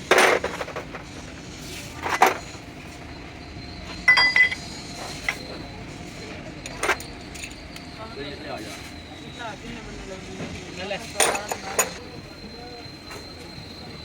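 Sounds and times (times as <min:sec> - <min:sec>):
metal parts clinking and knocking: 0:00.0 - 0:01.1, 0:04.1 - 0:04.7, 0:06.6 - 0:07.9, 0:11.1 - 0:12.0.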